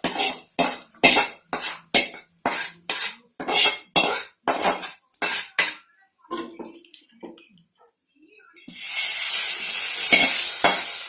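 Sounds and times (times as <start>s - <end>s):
metal spoon scraping a pan: 0.0s - 5.9s, 8.7s - 11.0s.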